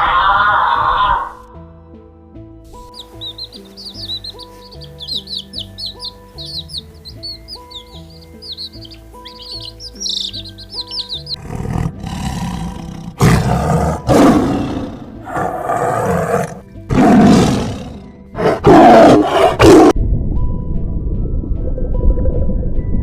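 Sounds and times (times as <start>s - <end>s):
soft background music: 1.3s - 23.0s
birds chirping: 2.8s - 13.3s
loud rough animal roars: 11.4s - 19.9s.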